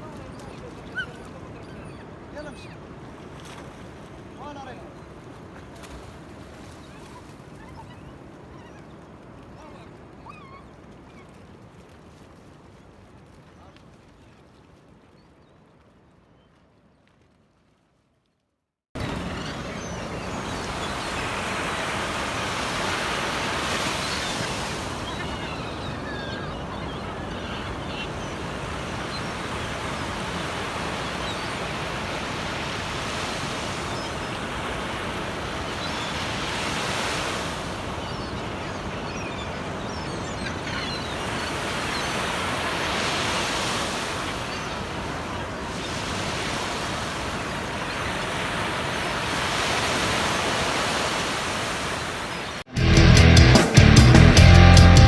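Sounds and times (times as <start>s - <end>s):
sea waves washing onto beach: 0.0s - 7.6s, 19.0s - 52.7s.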